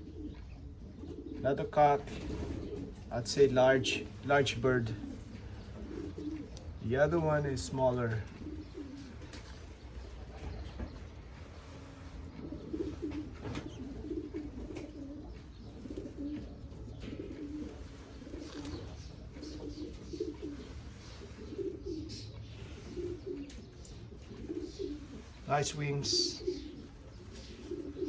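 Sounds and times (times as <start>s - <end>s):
pigeons cooing: 0.0s - 28.0s
faint rustling and clicks: 8.2s - 21.7s.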